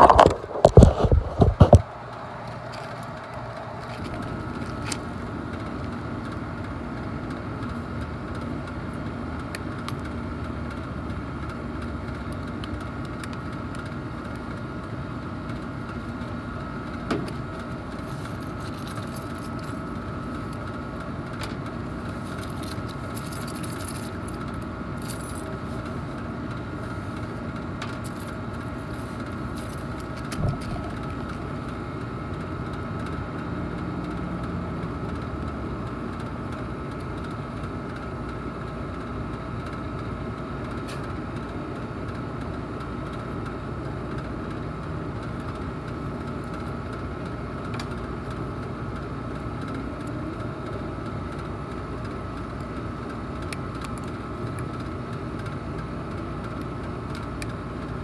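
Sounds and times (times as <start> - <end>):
air conditioning unit hum: 0.0 - 58.0.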